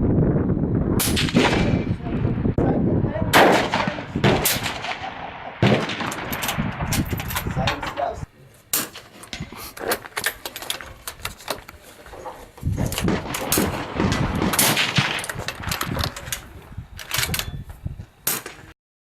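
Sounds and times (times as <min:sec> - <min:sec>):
gunshots in rapid succession: 0:01.0 - 0:02.0, 0:03.3 - 0:07.0, 0:13.0 - 0:15.7.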